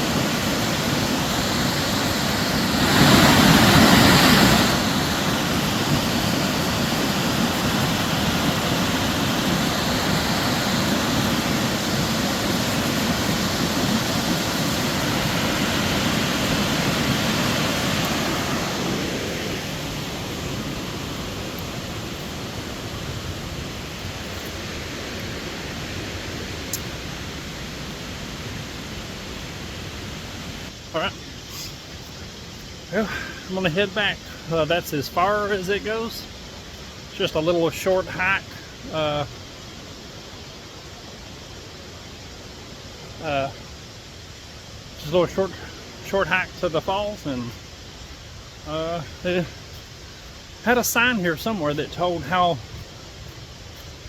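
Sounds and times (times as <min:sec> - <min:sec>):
waterfall roaring: 0:00.0 - 0:54.0.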